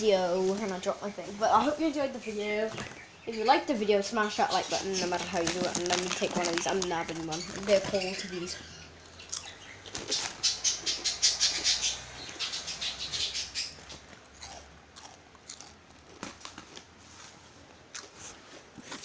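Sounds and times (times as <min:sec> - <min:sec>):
person crunching food: 0:09.0 - 0:10.4, 0:13.8 - 0:16.9, 0:17.8 - 0:19.0.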